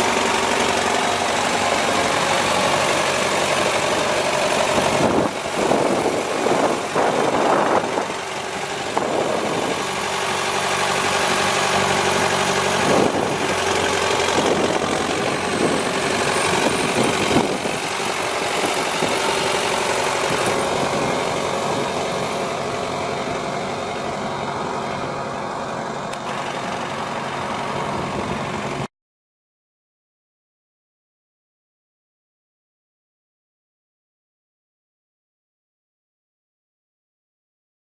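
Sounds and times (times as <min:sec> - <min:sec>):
tractor diesel engine idling: 0:00.0 - 0:28.9.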